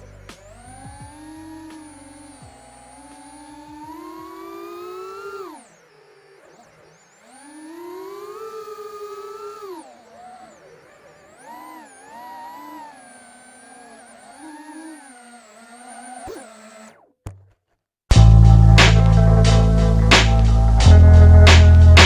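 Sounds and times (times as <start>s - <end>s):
quadcopter motors whining: 0.0s - 17.2s.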